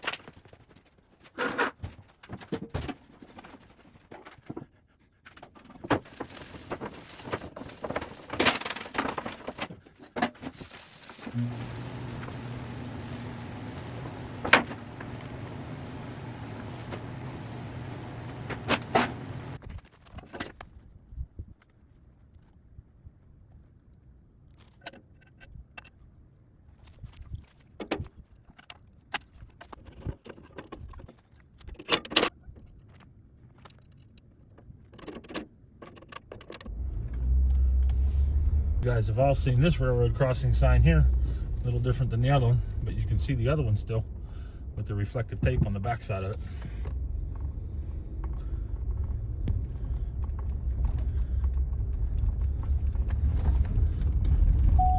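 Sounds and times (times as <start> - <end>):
vehicle engine running: 11.3 - 19.6, 36.7 - 44.9, 46.3 - 54.9
steady low rumble: 36.7 - 54.9.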